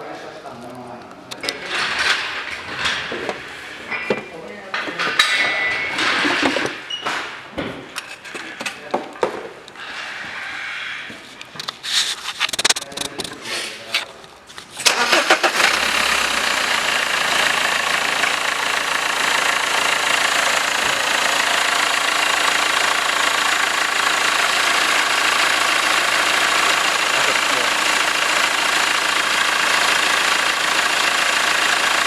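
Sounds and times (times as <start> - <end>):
diesel engine starting and running: 12.2 - 13.4, 14.8 - 32.0.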